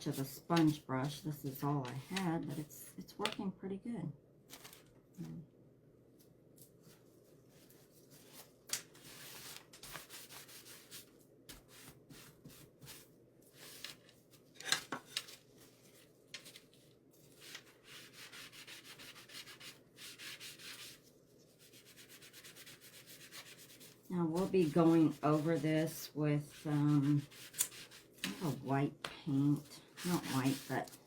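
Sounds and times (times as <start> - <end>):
sponge brush scrubbing wood: 17.8 - 21.0, 21.6 - 28.7, 29.8 - 31.0.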